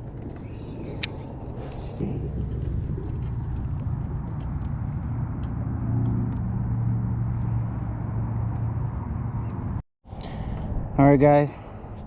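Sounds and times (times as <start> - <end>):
engine humming: 0.0 - 10.9.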